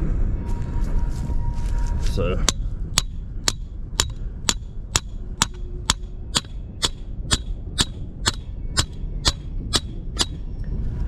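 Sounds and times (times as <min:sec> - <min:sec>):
hammer striking metal rod: 0:02.5 - 0:10.4.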